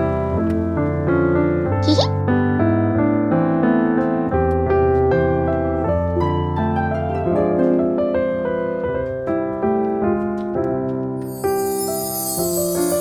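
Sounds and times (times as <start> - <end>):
gentle harp and piano music: 4.9 - 10.0, 10.8 - 13.0.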